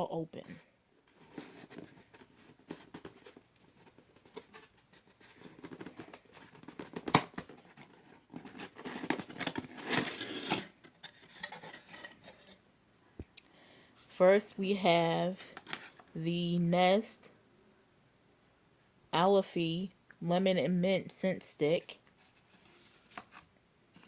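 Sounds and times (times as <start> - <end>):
rustling: 0.5 - 12.6
cardboard box scratching and tapping: 1.2 - 10.6.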